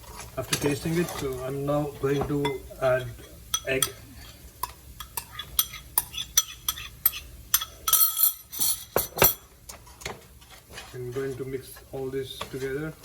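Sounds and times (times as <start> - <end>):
metal utensil clinking on pan: 2.1 - 9.5.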